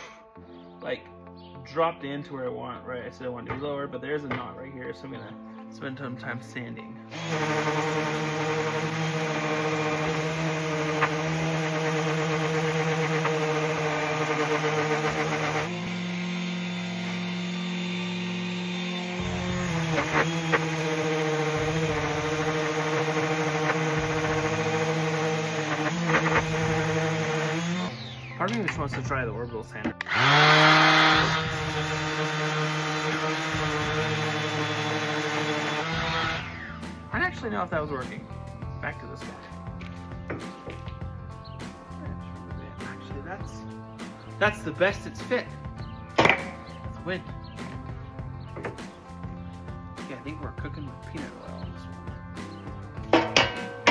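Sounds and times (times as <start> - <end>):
abrasive rasping on wood: 7.1 - 27.9
power sander motor hum: 7.1 - 29.1, 30.0 - 37.1.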